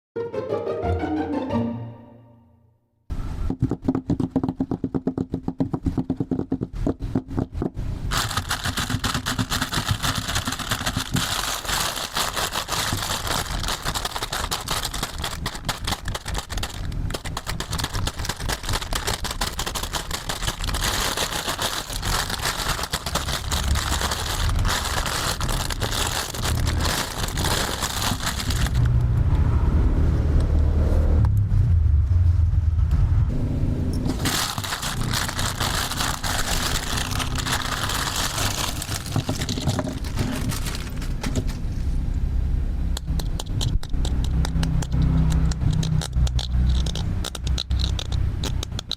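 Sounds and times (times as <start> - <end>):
plastic crackling and scraping: 6.6 - 29.1, 34.1 - 41.6, 43.5 - 48.9
plastic toy tools clicking: 8.1 - 28.9, 43.0 - 48.9.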